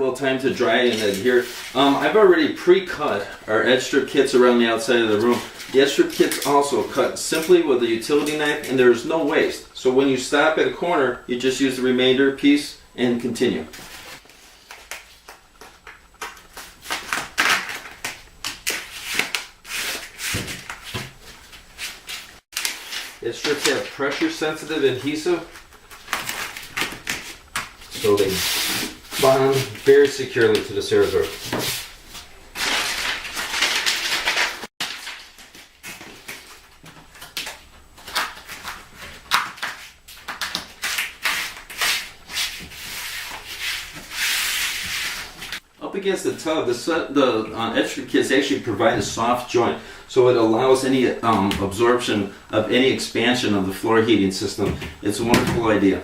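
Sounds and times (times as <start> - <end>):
foam strip rustling and crinkling: 13.7 - 45.6.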